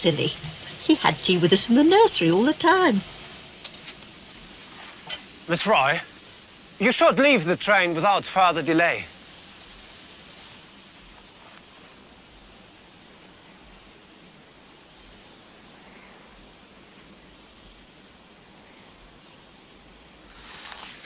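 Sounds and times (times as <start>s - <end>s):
faint steady hiss: 0.0s - 21.0s.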